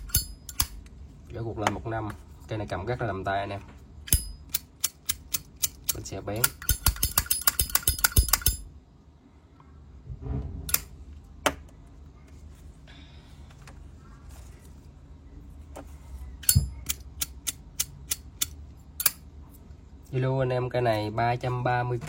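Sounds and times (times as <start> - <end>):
lighter flint wheel clicking: 4.1 - 8.6.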